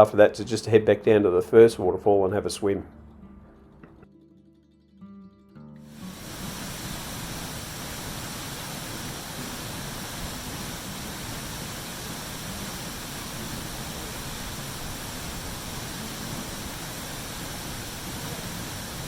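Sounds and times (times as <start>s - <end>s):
waterfall pouring into pool: 5.9s - 19.0s.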